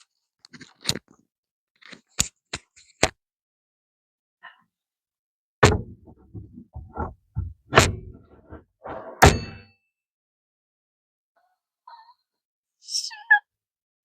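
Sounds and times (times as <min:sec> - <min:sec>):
heavy clunk with rattle: 0:05.6 - 0:09.6.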